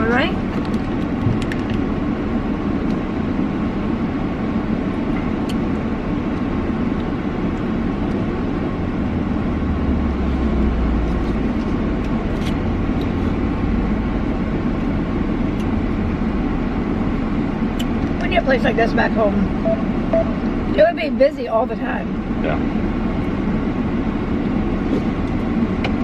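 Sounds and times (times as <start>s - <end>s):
deep rumble: 0.0s - 26.0s
road and engine noise in car: 0.0s - 26.0s.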